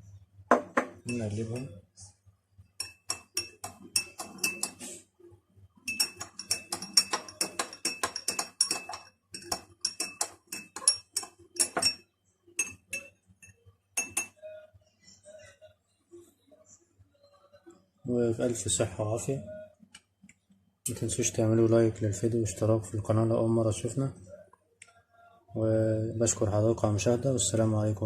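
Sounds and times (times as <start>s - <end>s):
spoon clinking against glass: 0.5s - 1.8s, 2.8s - 4.8s, 5.9s - 14.5s.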